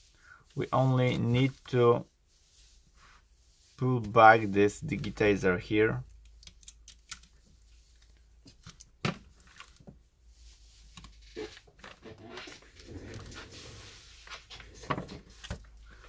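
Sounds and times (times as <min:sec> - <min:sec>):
soft scraping and rustling: 0:00.0 - 0:05.4, 0:09.4 - 0:16.0.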